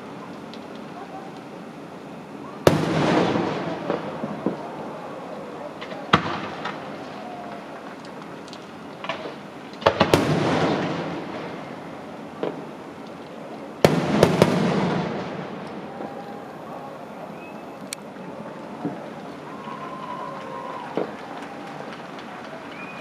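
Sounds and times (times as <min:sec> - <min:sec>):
fireworks crackle: 0:00.0 - 0:23.0
fireworks bangs: 0:02.6 - 0:08.0, 0:09.0 - 0:12.8, 0:13.8 - 0:17.5, 0:18.8 - 0:23.0.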